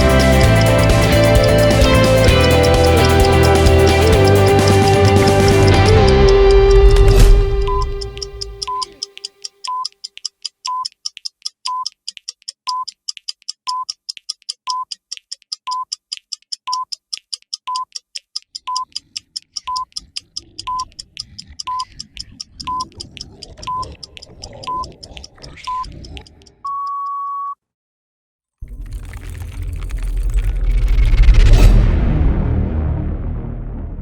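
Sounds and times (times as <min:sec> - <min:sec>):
rapid clock-like ticking: 0:00.0 - 0:26.6
short electronic beeps: 0:05.2 - 0:10.0, 0:10.7 - 0:11.0, 0:11.7 - 0:12.0, 0:12.7 - 0:13.0, 0:13.7 - 0:14.0, 0:14.6 - 0:14.9, 0:15.7 - 0:16.0, 0:16.7 - 0:17.0, 0:17.6 - 0:18.0, 0:18.6 - 0:18.9, 0:19.6 - 0:19.9, 0:21.7 - 0:21.9, 0:24.7 - 0:24.9, 0:25.7 - 0:25.9, 0:26.6 - 0:27.6
low rumbling noise: 0:28.6 - 0:34.0.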